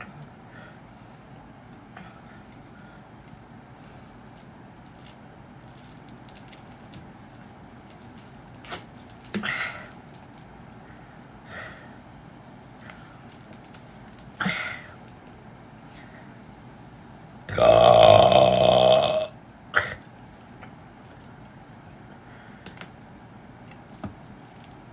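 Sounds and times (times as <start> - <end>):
person swallowing: 17.5 - 20.0
short throat sounds: 17.5 - 20.1.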